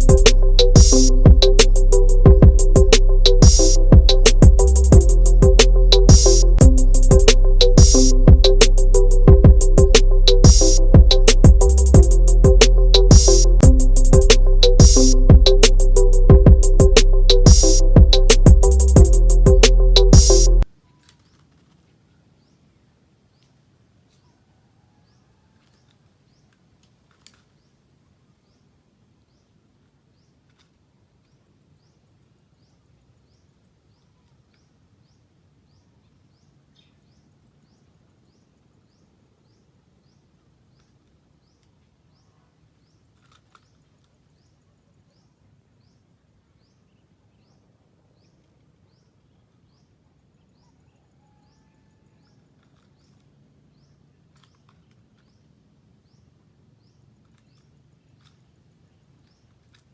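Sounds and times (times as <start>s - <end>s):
small bird chirping: 0.0s - 21.5s
faint outdoor ambience: 0.0s - 59.9s.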